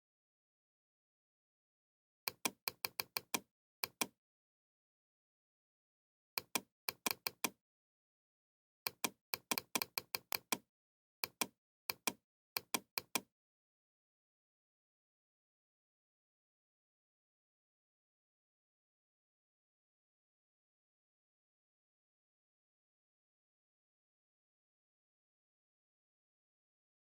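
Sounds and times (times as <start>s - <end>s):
mouse clicks: 2.3s - 4.2s, 6.4s - 7.6s, 8.9s - 10.6s, 11.2s - 13.3s.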